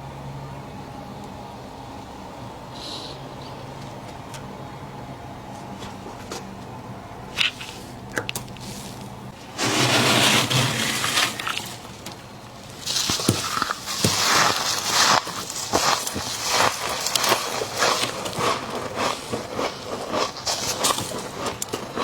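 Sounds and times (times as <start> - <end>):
frost crunching and crackling: 7.3 - 22.0.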